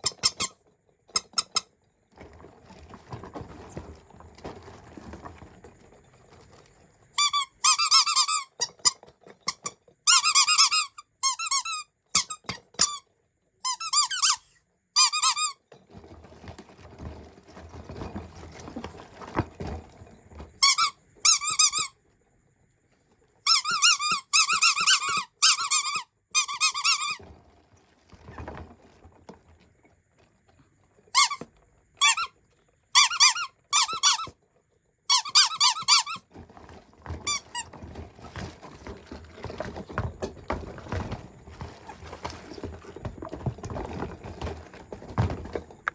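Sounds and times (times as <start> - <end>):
rubber squeeze toy squeaking: 0.0 - 1.7, 7.2 - 13.0, 13.6 - 15.7, 20.6 - 22.0, 23.4 - 27.2, 31.1 - 32.4, 33.0 - 34.4, 35.1 - 36.3, 37.2 - 37.8
handling noise: 2.1 - 8.3, 15.7 - 21.7, 26.6 - 34.3, 35.1 - 45.9.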